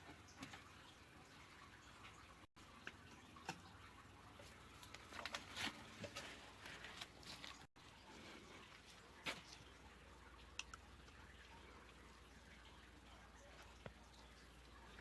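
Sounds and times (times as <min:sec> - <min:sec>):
faint clicks and taps: 0:10.4 - 0:15.0.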